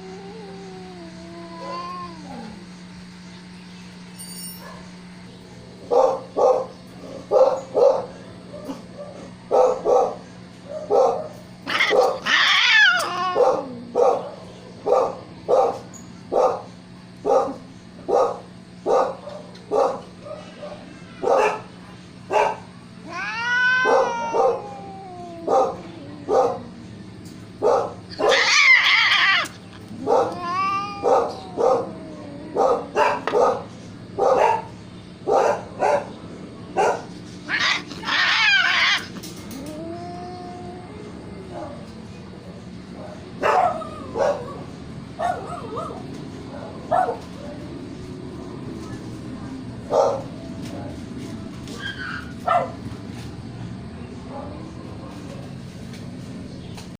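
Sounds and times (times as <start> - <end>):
cats meowing: 0.0 - 3.5, 11.6 - 14.3, 19.6 - 35.2, 37.0 - 43.0, 51.1 - 52.4
cat yowls falling in pitch: 23.0 - 25.8, 28.2 - 32.9.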